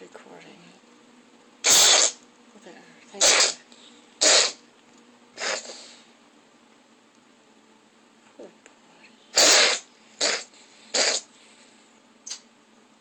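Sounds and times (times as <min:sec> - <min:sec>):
cat sneezing: 0:01.6 - 0:02.2, 0:03.2 - 0:03.6, 0:04.2 - 0:04.6, 0:05.4 - 0:06.0, 0:09.3 - 0:11.3.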